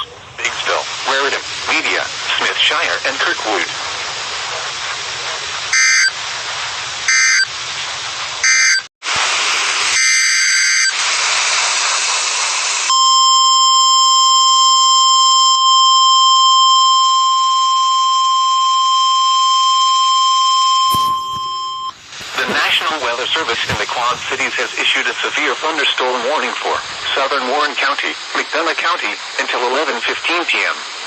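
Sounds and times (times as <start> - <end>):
radio static: 0.0 - 6.2, 20.8 - 31.0
high-pitched warning alarm tone: 5.8 - 6.1, 7.1 - 7.5, 8.4 - 8.9, 10.0 - 11.0, 12.9 - 22.0.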